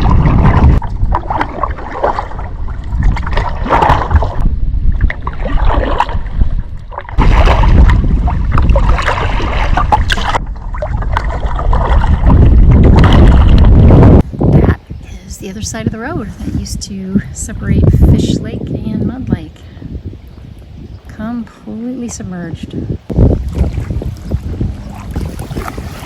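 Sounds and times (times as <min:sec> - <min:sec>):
paddle splashing in water: 0:00.0 - 0:14.0, 0:23.1 - 0:26.0
wind rumbling on microphone: 0:00.0 - 0:26.0.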